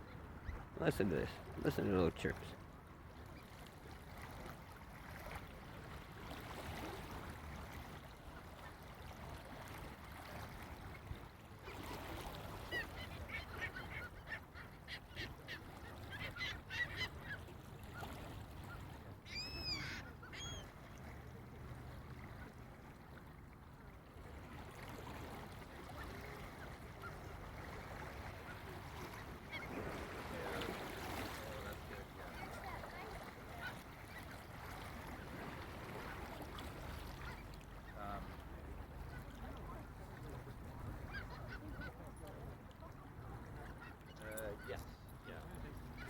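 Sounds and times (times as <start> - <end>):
young gulls chirping: 12.6 - 20.8, 41.0 - 42.0.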